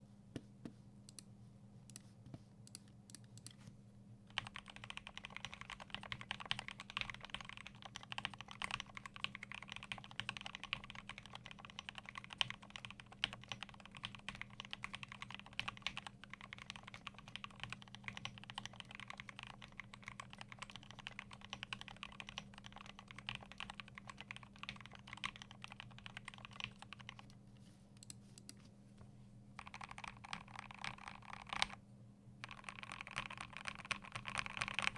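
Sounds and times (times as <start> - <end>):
typing on mechanical keyboard: 4.3 - 27.3, 29.6 - 31.8, 32.4 - 34.9.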